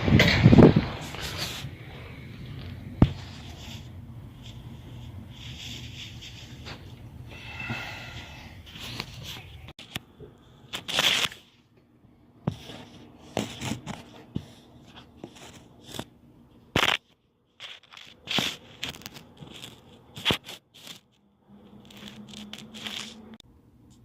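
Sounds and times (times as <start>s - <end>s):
faint steady hum: 0.1s - 24.0s
rustling clicks and knocks: 16.8s - 23.4s.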